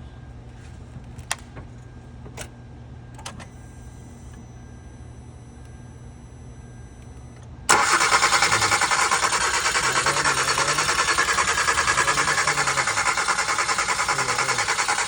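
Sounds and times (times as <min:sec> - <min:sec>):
steady low hum: 0:00.0 - 0:15.0
starter cranking engine: 0:07.7 - 0:15.0.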